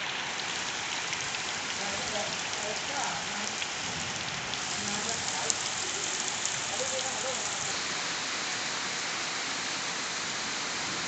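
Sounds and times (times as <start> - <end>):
rain drop ticks: 0.0 - 7.7
heavy rain: 0.0 - 11.0.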